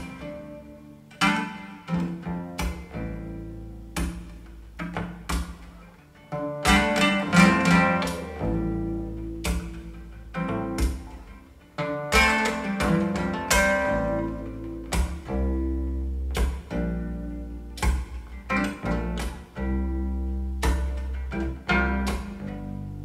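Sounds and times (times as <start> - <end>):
plucked guitar notes: 0.0 - 23.0
deep bass line: 7.3 - 11.1, 12.8 - 23.0.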